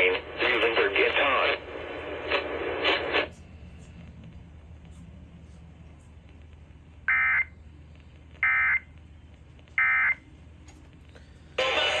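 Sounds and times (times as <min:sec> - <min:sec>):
loud broadcast audio: 0:00.0 - 0:03.4, 0:11.6 - 0:12.0.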